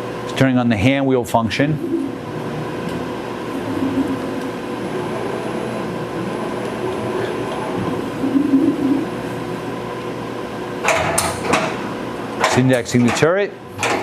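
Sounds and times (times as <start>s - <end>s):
lathe mechanical hum: 0.0s - 14.0s
short low whirs: 1.5s - 12.4s.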